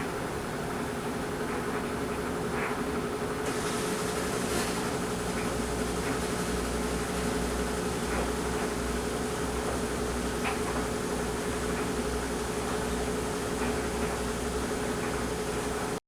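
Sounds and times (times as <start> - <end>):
washer and dryer humming: 3.2 - 16.0.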